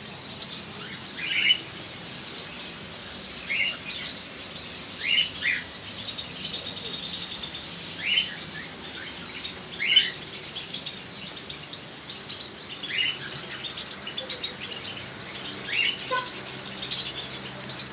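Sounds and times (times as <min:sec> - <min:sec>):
cage birds chirping: 0:00.0 - 0:17.9
rising bird call notes: 0:15.7 - 0:16.6.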